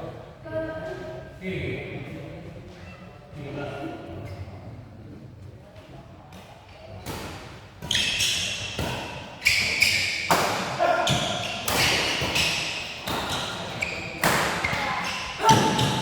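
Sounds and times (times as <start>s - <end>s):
rackets hitting shuttlecock: 7.1s - 16.0s.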